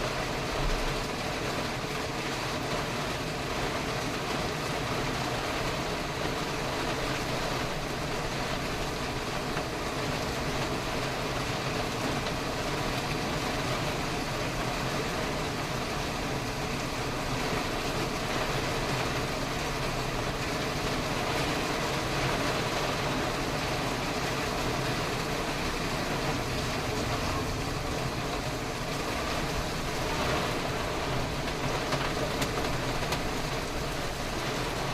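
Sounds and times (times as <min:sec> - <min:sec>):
road noise: 0:00.0 - 0:34.9
vehicle engine: 0:07.6 - 0:34.9.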